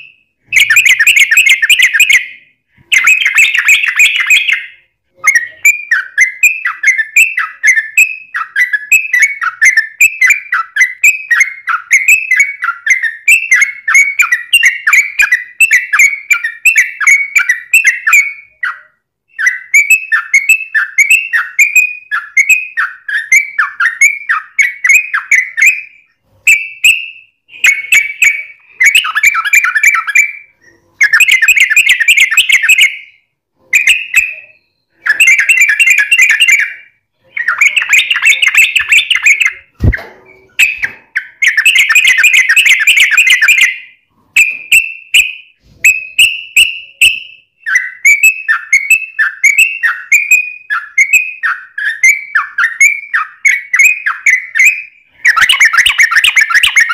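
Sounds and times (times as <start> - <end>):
bird singing rapid runs of notes: 33.8 - 39.9, 46.1 - 56.9.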